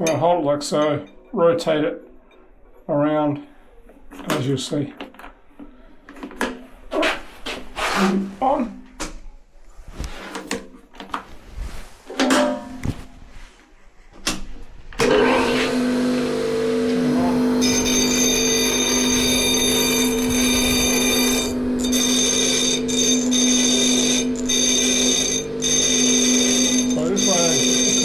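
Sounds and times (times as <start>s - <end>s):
grinder motor humming: 15.0s - 28.0s
metal grinding whine: 15.1s - 28.0s.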